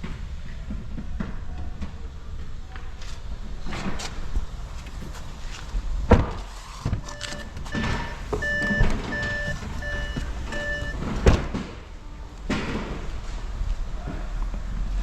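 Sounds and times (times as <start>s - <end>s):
electronic beeper beeping: 7.0s - 11.0s.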